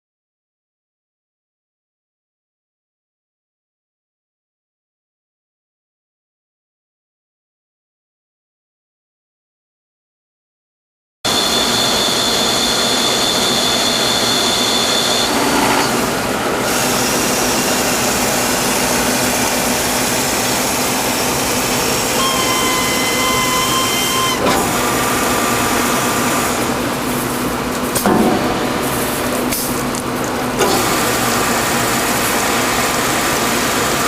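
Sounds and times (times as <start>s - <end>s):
drilling machine running: 11.3s - 34.0s.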